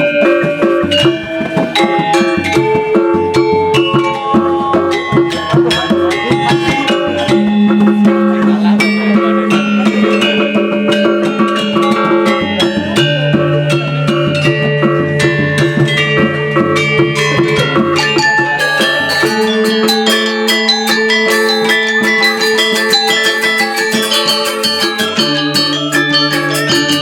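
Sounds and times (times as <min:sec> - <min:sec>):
drumming: 0:00.0 - 0:27.0
gamelan metallic notes: 0:00.0 - 0:27.0.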